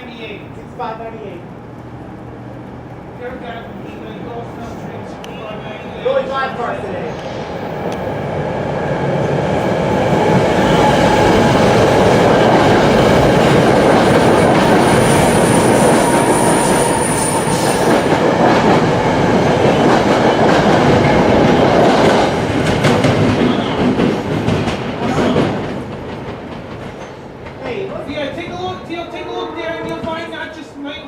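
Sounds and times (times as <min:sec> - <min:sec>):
train wheels rumbling on rail: 0:00.0 - 0:31.0
high wheel squeal: 0:14.3 - 0:18.1
rail-joint clicks: 0:19.6 - 0:28.8, 0:29.8 - 0:30.3.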